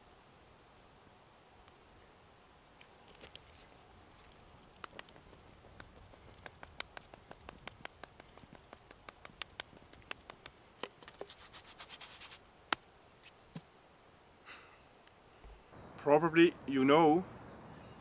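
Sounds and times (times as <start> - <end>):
small fire crackling and popping: 2.8 - 13.6.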